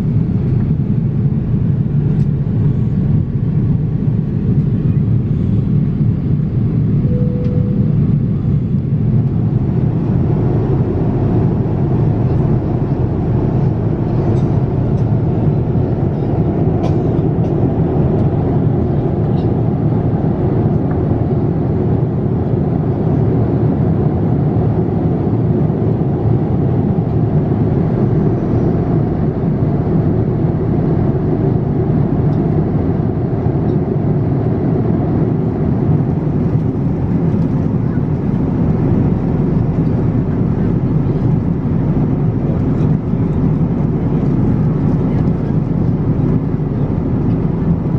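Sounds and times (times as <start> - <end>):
airliner cabin noise: 0.0 - 47.9
short beep: 7.0 - 8.1.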